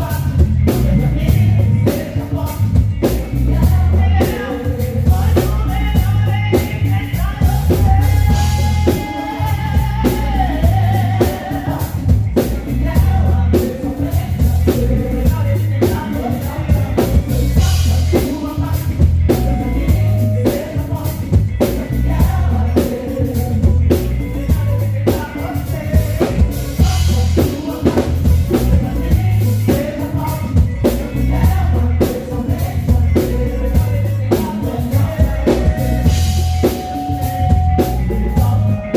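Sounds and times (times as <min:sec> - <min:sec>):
person singing: 0:00.0 - 0:38.9
worship band playing: 0:00.0 - 0:38.9.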